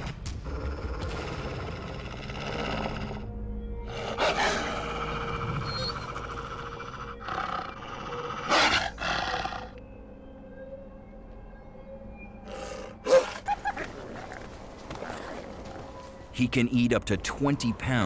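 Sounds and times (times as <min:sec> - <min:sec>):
wolves growling and snarling: 0:00.4 - 0:09.8, 0:12.4 - 0:15.9.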